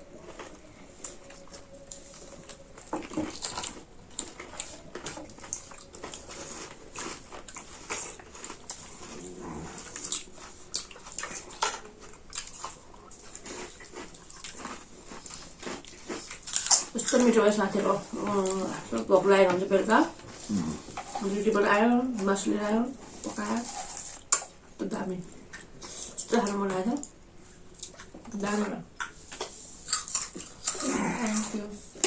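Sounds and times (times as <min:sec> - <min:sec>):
chewing and lip smacking: 0:00.1 - 0:17.4, 0:25.2 - 0:32.0.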